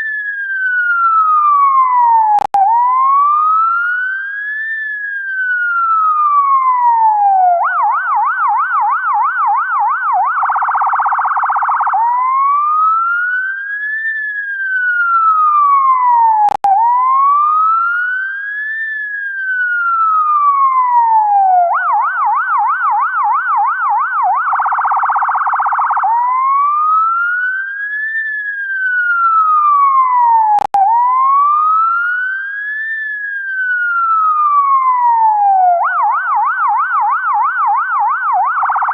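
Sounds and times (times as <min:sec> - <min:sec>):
ambulance siren wailing and yelping: 0:00.0 - 0:38.9
click: 0:16.5 - 0:16.7.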